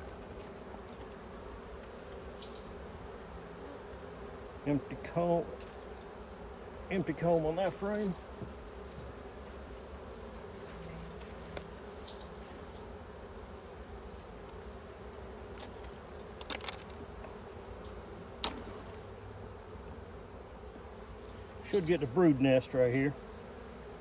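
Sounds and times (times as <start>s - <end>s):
bees buzzing: 0.0s - 24.0s.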